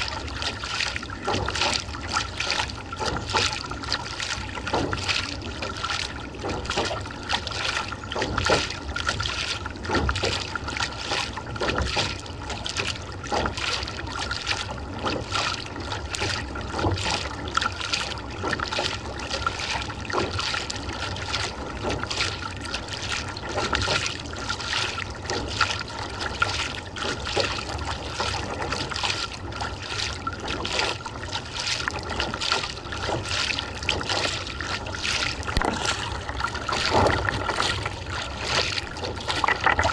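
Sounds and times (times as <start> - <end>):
kayak paddle strokes in water: 0.0 - 39.9
water splashing and trickling: 0.0 - 39.9.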